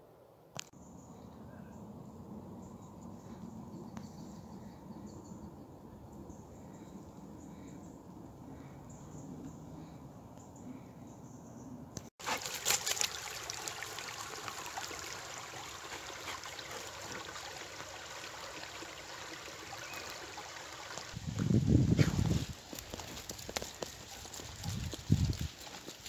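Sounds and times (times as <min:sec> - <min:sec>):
water trickling: 0:12.2 - 0:21.2.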